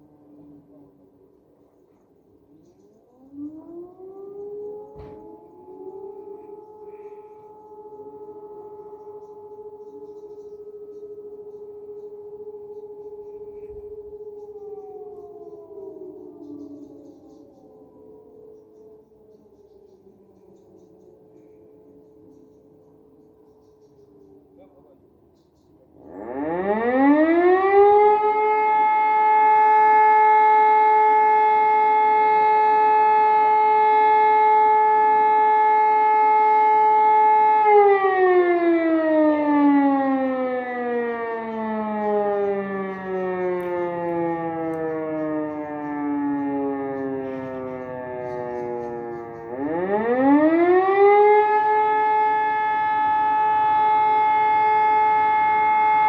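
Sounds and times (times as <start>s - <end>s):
electromechanical siren wailing: 2.9s - 20.3s, 26.0s - 56.0s.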